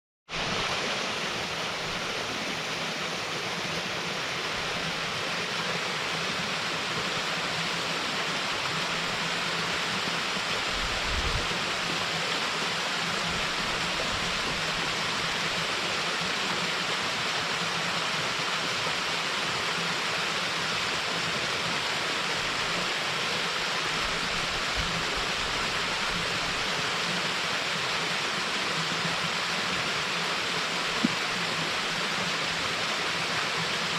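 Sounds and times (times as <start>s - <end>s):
waterfall pouring into pool: 0.3s - 33.9s
wind rumble on microphone: 10.7s - 11.6s.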